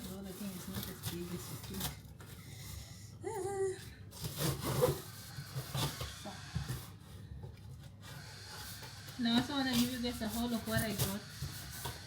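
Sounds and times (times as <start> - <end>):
cardboard box rubbing and scraping: 8.6 - 12.0.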